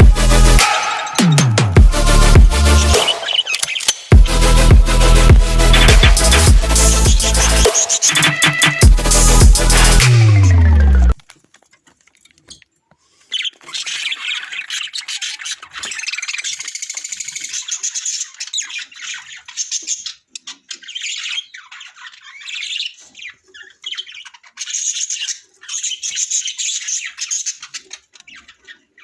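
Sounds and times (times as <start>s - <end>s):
parrots chattering and squawking: 2.9s - 4.1s, 5.6s - 10.0s, 12.4s - 29.0s.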